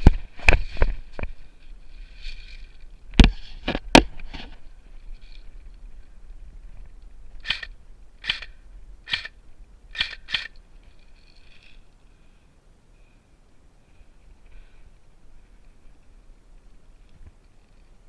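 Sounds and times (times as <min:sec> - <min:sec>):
airsoft gun shots: 0:07.4 - 0:08.5, 0:09.1 - 0:09.4.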